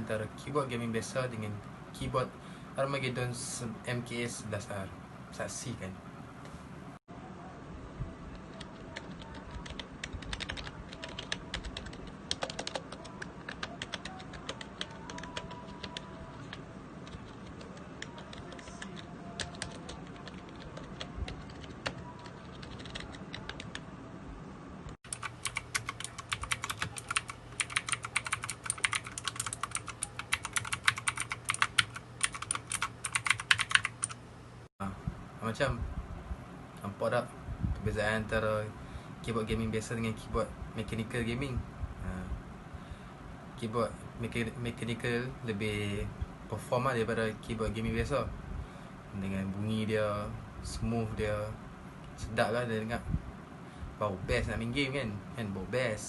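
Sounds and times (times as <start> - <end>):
muted keyboard typing: 8.3 - 23.8, 25.1 - 34.2
mechanical keyboard clicking: 8.6 - 23.8, 25.1 - 34.2.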